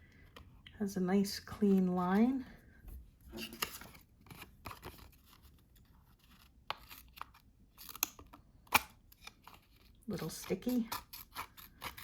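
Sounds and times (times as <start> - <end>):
scissors snipping paper: 9.5 - 12.0.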